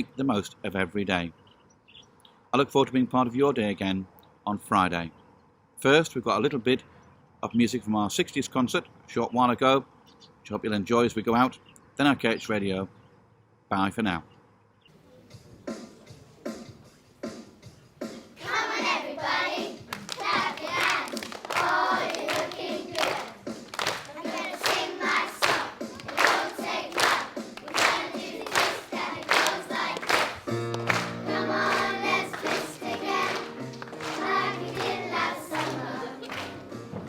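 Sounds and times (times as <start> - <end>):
rhythmic clapping: 18.1 - 37.0
choir singing: 18.4 - 23.5, 24.1 - 36.8
low accompanying notes: 24.4 - 37.0.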